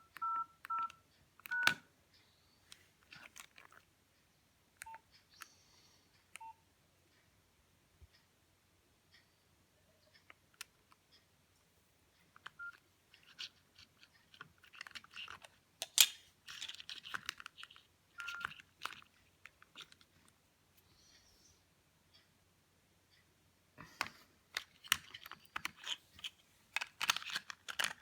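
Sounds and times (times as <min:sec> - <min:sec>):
key beeps: 0:00.0 - 0:01.8, 0:12.5 - 0:12.8, 0:18.2 - 0:18.6.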